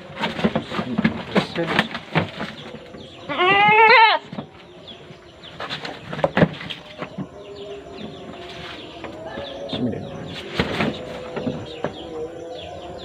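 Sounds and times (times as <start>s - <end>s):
handling noises: 0.0s - 13.0s
goat bleating: 3.3s - 4.3s.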